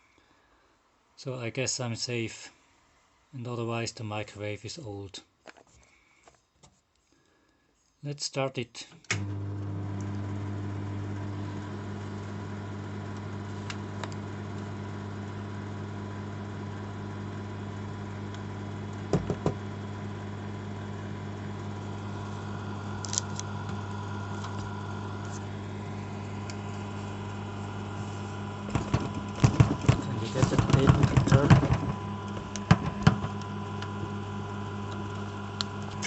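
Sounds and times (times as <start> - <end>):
microwave oven humming: 9.2 - 36.0.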